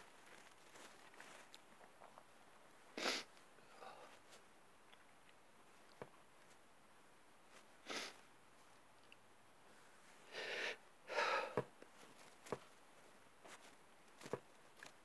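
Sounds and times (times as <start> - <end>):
man sniffing: 3.0 - 3.3, 7.8 - 8.2, 10.3 - 11.6
man gasping breaths: 10.3 - 11.7.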